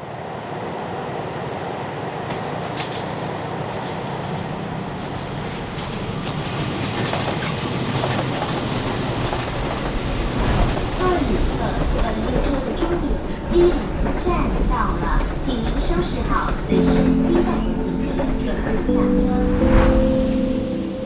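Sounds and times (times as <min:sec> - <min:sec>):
train running on rails: 0:00.0 - 0:21.0
sharp clicks from train wheels: 0:02.2 - 0:04.0, 0:05.4 - 0:17.3.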